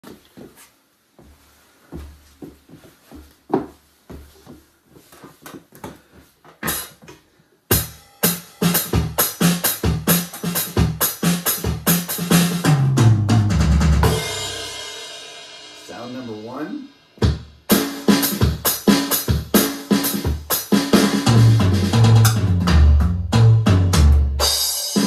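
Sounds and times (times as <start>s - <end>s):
electronic drum kit playing: 6.6s - 7.1s, 7.7s - 25.0s
bass drum thuds: 17.2s - 17.7s, 21.3s - 24.6s.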